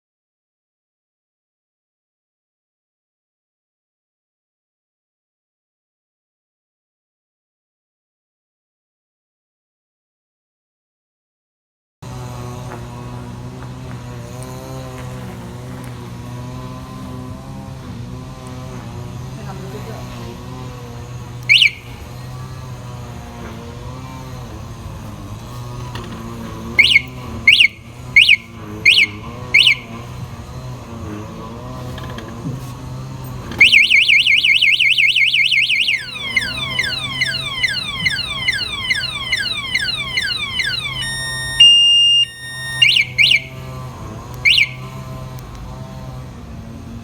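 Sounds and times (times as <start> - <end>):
motorcycle alarm siren: 21.0 - 45.5.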